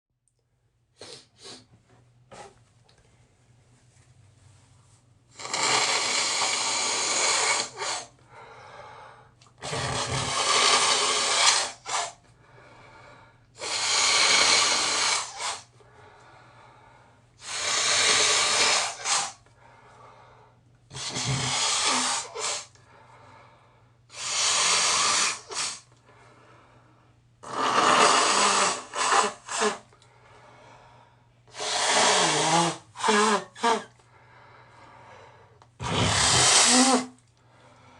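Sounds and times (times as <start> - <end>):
person blowing nose into tissue: 1.0 - 1.7, 5.3 - 8.2, 9.6 - 12.2, 13.6 - 15.7, 17.4 - 19.4, 20.9 - 22.7, 24.1 - 25.9, 27.4 - 29.9, 31.5 - 34.0, 35.8 - 37.2.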